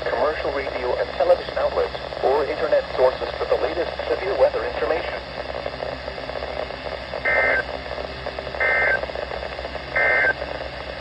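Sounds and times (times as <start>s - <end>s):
radio hiss: 0.0s - 11.0s
digital data tone bursts: 7.3s - 7.7s, 8.6s - 9.0s, 9.9s - 10.4s.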